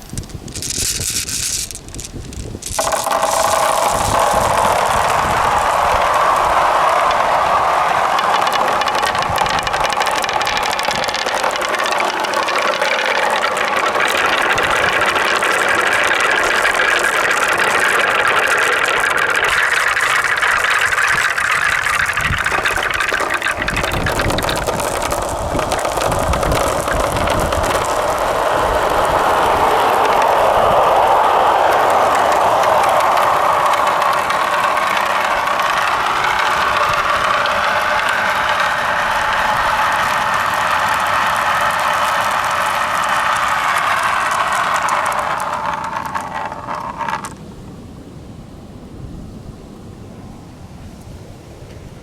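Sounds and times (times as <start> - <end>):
marbles rattling down rails: 0.0 - 47.4.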